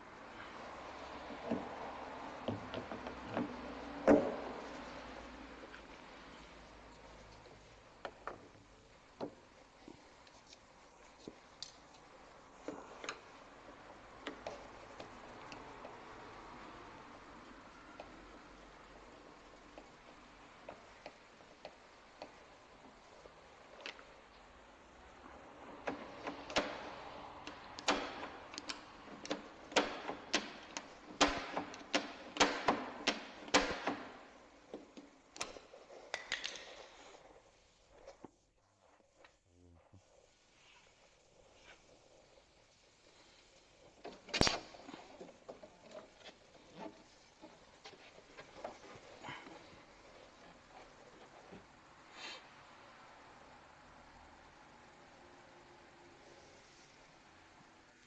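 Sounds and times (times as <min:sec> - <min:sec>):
low steady hiss: 0:00.0 - 0:58.0.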